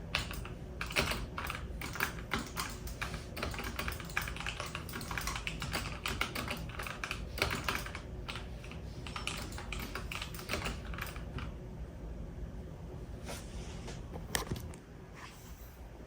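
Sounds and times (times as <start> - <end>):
computer keyboard typing: 0.0 - 11.5.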